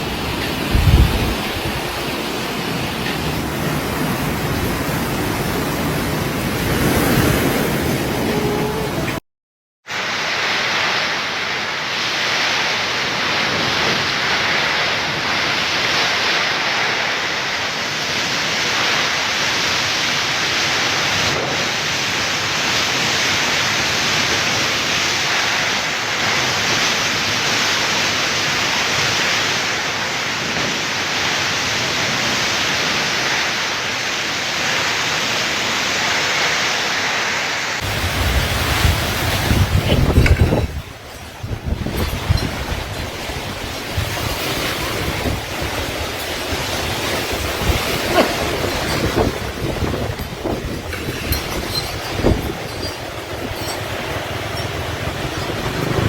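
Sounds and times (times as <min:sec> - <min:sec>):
wind buffeting microphone: 0:00.0 - 0:09.2, 0:37.8 - 0:56.0
heavy rain hissing: 0:09.9 - 0:56.0.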